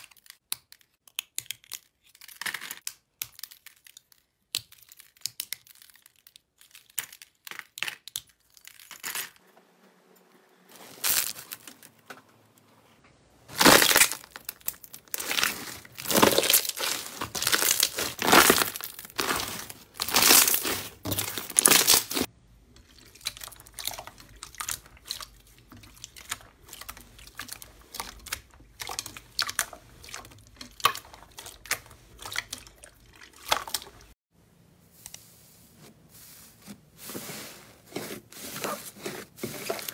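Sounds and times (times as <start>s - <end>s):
slime crackling and popping: 13.5s - 22.3s.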